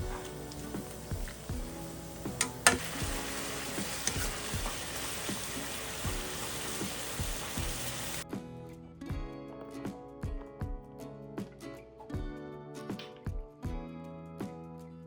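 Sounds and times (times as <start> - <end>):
food sizzling in a pan: 0.0 - 8.2
background music with steady beat: 0.0 - 15.0.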